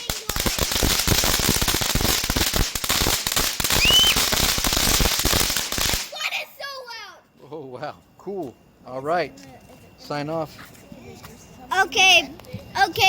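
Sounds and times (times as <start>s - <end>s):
firework crackling: 0.0s - 6.6s
short whistle-like tone: 3.8s - 4.2s.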